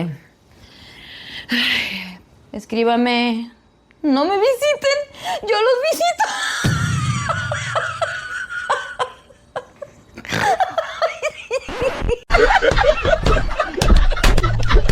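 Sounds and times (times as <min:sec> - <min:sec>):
laughter in bursts: 0:07.0 - 0:14.9.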